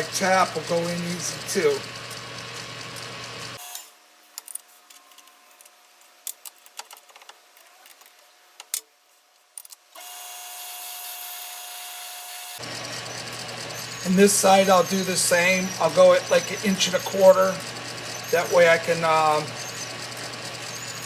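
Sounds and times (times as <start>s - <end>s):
metal lathe running: 0.0s - 3.6s, 12.3s - 21.0s.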